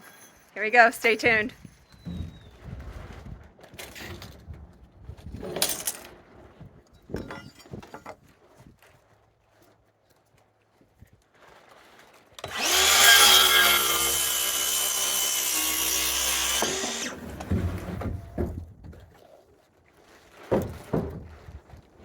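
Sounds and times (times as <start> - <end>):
power saw cutting wood: 12.4 - 17.8
wood knocks: 20.5 - 21.5.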